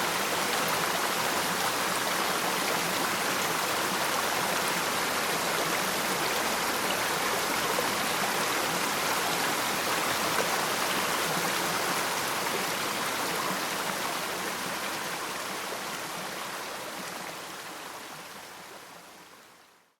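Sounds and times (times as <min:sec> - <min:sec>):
waterfall rushing: 0:00.0 - 0:15.2.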